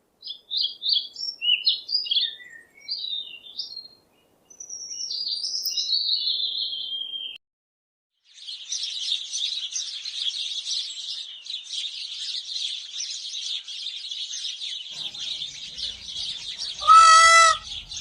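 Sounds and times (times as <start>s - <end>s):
small birds twittering: 0.2s - 7.4s, 8.3s - 18.0s
bird whistling song: 0.3s - 7.4s, 15.0s - 18.0s.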